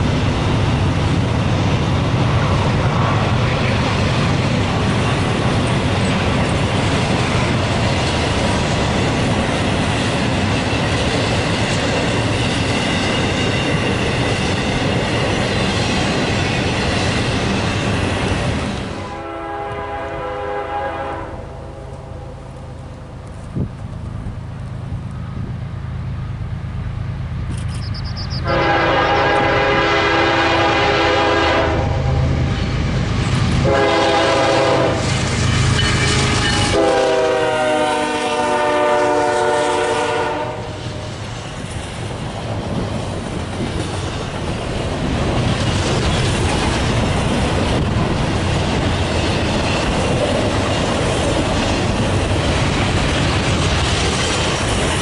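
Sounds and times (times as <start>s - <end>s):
train wheel clatter: 0.0s - 19.0s, 38.5s - 55.0s
locomotive engine rumble: 0.0s - 55.0s
locomotive air horn blasts: 19.0s - 22.1s, 28.4s - 32.4s, 33.6s - 35.1s, 35.8s - 41.1s.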